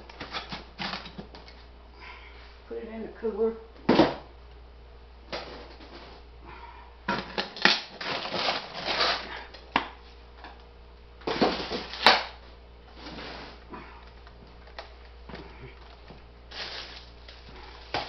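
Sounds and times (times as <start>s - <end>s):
frozen items clunking: 7.1s - 9.7s, 11.2s - 18.0s
plastic wrapping rustling: 7.3s - 9.6s, 11.3s - 18.0s.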